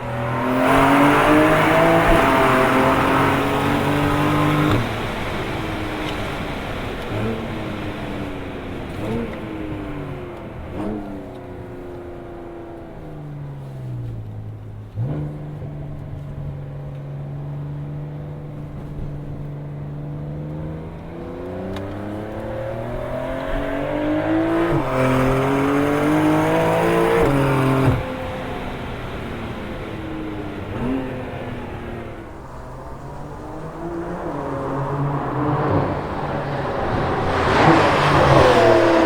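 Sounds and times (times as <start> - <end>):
exhaust crack: 0.0 - 39.0
sports car engine revving: 0.0 - 39.0.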